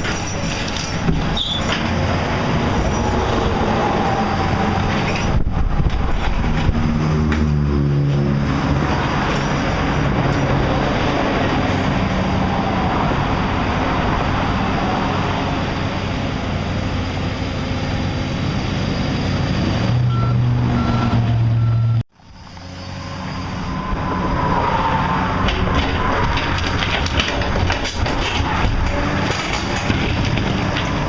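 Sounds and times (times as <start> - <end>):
heavy construction machinery running: 0.0 - 31.0
backup alarm beeping: 20.0 - 22.0.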